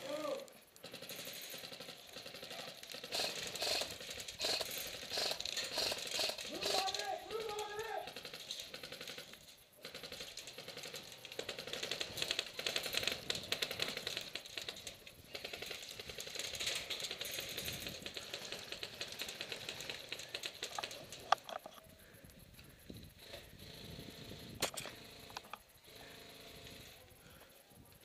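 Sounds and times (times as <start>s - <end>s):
airsoft guns firing rapidly: 0.0s - 21.3s.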